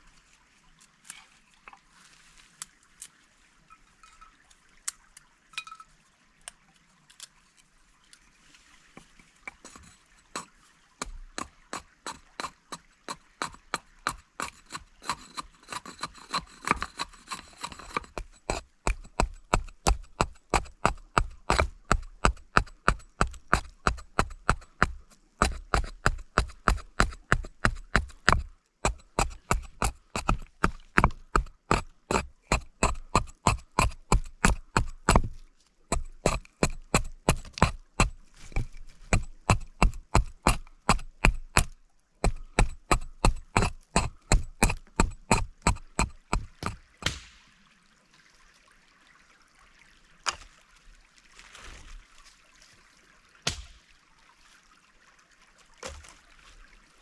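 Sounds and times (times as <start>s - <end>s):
knife chopping on cutting board: 39.5s - 47.4s, 53.5s - 53.7s.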